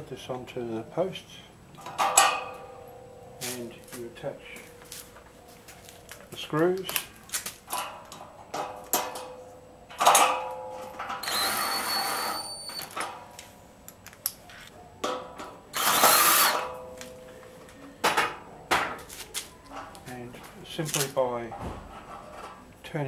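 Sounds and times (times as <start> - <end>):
power drill whining: 11.2 - 12.9, 15.8 - 16.6.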